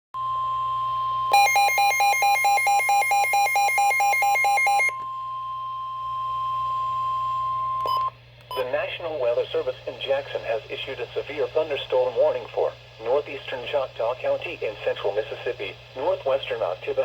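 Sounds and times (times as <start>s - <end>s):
steady warning alarm tone: 0.2s - 8.6s
harsh two-pitch electronic beeping: 1.3s - 5.0s.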